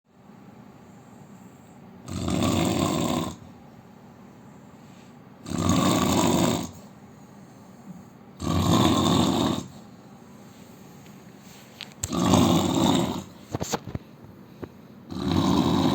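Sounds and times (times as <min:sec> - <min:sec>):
man snoring: 0:02.0 - 0:03.4, 0:05.4 - 0:06.8, 0:08.4 - 0:09.7, 0:12.1 - 0:13.3, 0:15.1 - 0:15.9.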